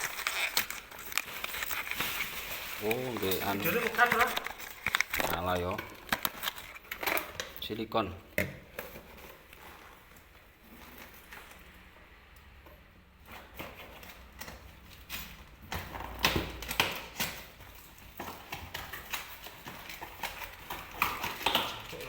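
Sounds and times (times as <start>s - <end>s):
rustling: 0.0s - 7.7s
packaging being handled: 0.0s - 7.9s, 13.4s - 22.0s.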